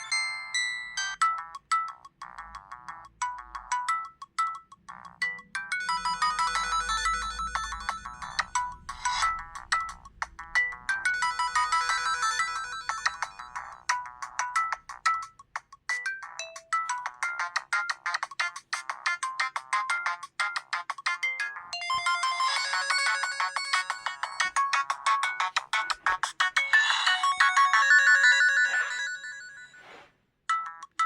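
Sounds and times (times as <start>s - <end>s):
electronic phone ringtone: 0.0s - 4.1s, 4.9s - 14.7s, 21.4s - 29.8s.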